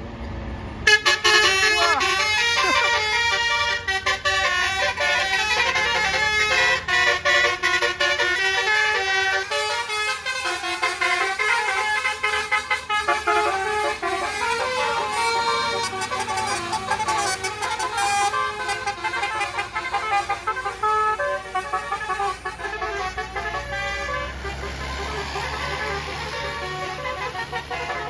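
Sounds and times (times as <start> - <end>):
multi-tone musical air horn: 0.8 - 28.0.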